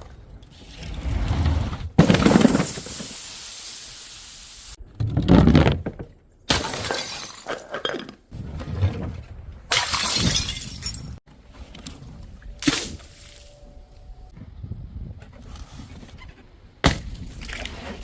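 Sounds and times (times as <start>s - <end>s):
glass bottles shattering: 6.5s - 8.1s, 9.7s - 11.2s.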